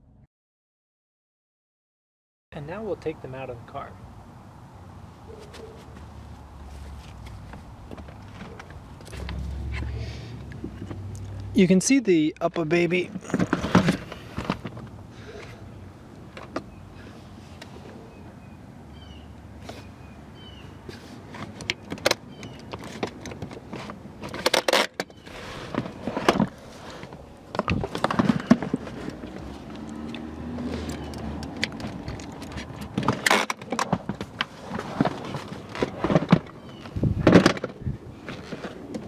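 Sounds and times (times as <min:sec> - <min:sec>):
plastic car seats clicking and knocking: 0:07.1 - 0:09.4, 0:12.6 - 0:15.0, 0:21.3 - 0:39.0.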